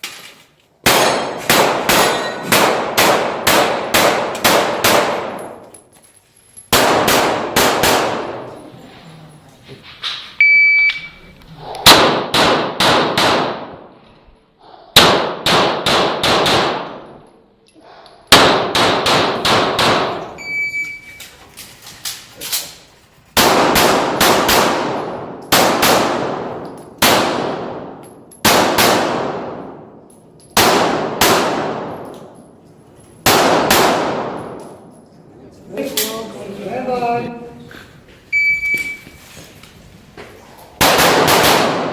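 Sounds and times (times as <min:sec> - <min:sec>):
rapid pistol fire: 0:00.8 - 0:05.4, 0:06.7 - 0:08.4, 0:11.8 - 0:13.7, 0:15.0 - 0:17.0, 0:18.3 - 0:20.2, 0:23.4 - 0:27.8, 0:28.4 - 0:29.6, 0:30.6 - 0:31.9, 0:33.3 - 0:34.4, 0:40.8 - 0:41.9
shot timer beep: 0:10.4 - 0:11.2, 0:20.4 - 0:21.1, 0:38.4 - 0:39.1.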